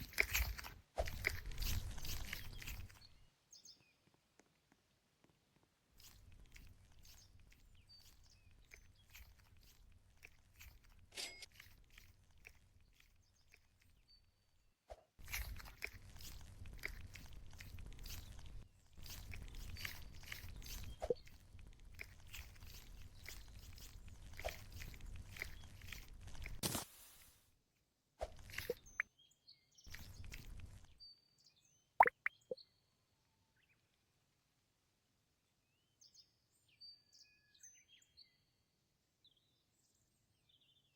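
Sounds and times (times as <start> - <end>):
small clicks of foam toy: 0.0 - 3.0, 28.2 - 29.0
foam toy squishing: 0.0 - 3.1, 6.0 - 14.0, 15.2 - 27.4, 28.2 - 29.0, 29.9 - 30.9
foam toy rustling: 15.2 - 27.5
sharp pops: 26.6 - 27.2.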